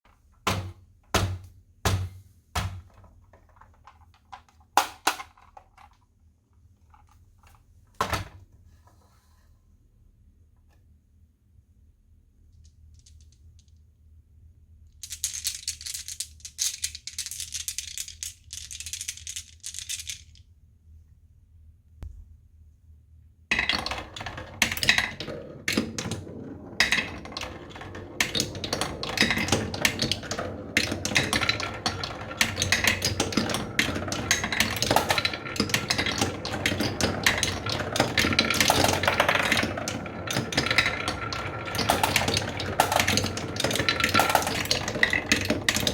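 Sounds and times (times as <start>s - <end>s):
marbles clattering in a marble run: 23.5s - 45.9s.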